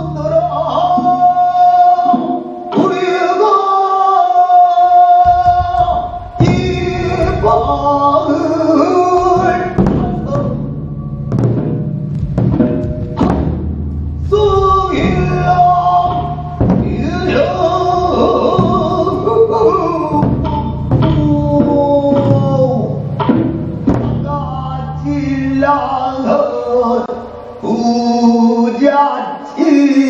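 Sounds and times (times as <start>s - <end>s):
man singing long wavering notes: 0.0s - 11.2s, 14.2s - 23.3s, 24.0s - 30.0s
music backing: 0.0s - 30.0s
big drum strokes: 5.2s - 27.8s.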